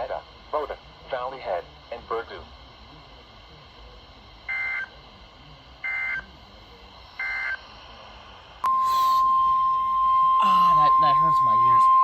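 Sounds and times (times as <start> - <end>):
steady radio alert tone: 8.6 - 12.0
digital data bursts: 8.7 - 12.0.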